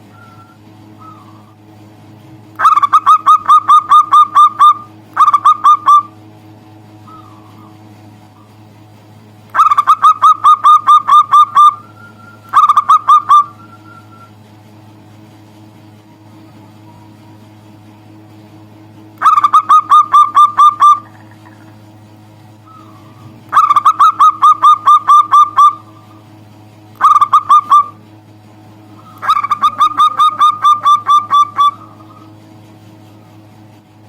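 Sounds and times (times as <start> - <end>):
faint steady hum: 0.0 - 34.0
dove cooing: 0.1 - 1.6, 2.6 - 6.2, 7.0 - 8.6, 9.5 - 14.4, 19.2 - 21.8, 22.6 - 26.3, 27.0 - 28.0, 28.9 - 32.4.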